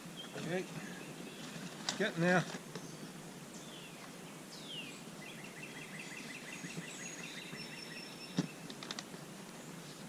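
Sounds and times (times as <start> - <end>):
bird singing: 0.0 - 1.8, 2.7 - 8.8.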